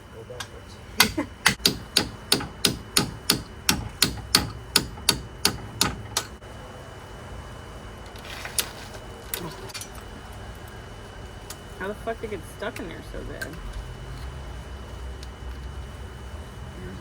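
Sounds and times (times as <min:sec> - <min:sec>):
hammer blows on metal: 0:00.4 - 0:06.4.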